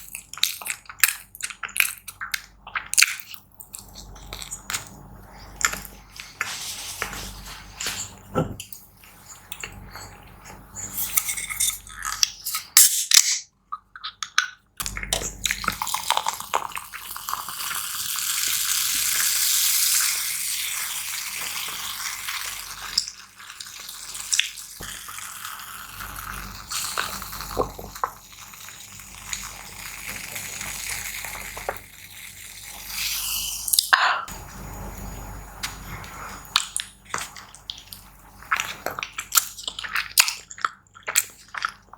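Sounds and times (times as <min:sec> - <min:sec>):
noodles being stirred: 0:03.8 - 0:12.5.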